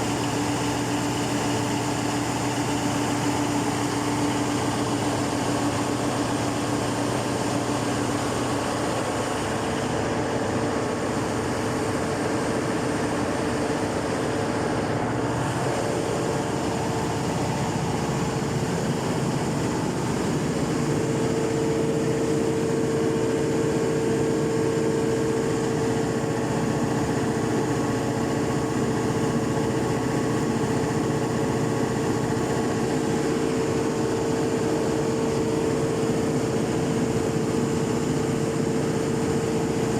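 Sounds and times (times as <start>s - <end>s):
diesel engine running: 0.0s - 37.3s.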